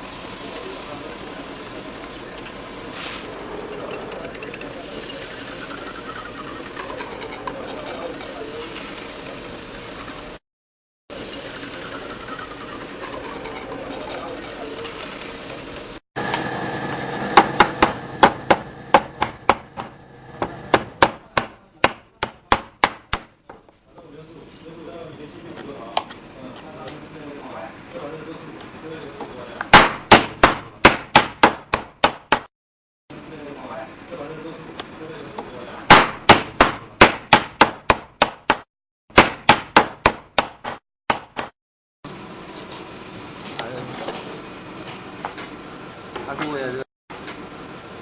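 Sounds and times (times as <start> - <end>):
machine hum: 11.1 - 21.0.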